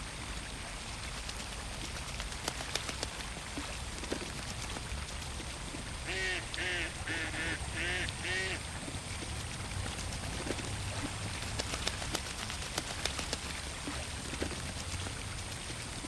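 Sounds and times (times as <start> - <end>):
water drips and splashes: 0.0 - 16.0
duck quacking: 6.1 - 8.6.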